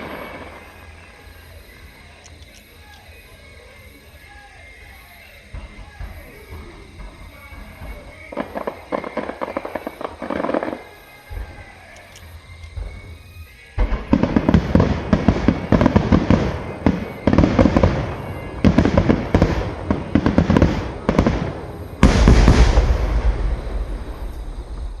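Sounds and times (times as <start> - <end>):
firework shells bursting with crackling: 0.0 - 1.0, 5.5 - 13.2, 13.8 - 25.0
deep firework boom: 13.8 - 25.0.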